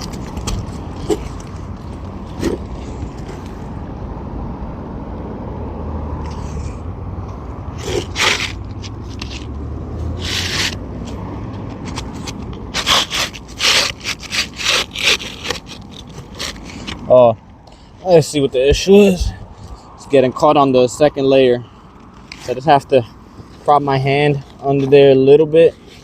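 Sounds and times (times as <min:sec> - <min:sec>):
shingle scraping: 0:00.0 - 0:03.8, 0:06.2 - 0:20.0
steady low rumble: 0:18.2 - 0:20.0.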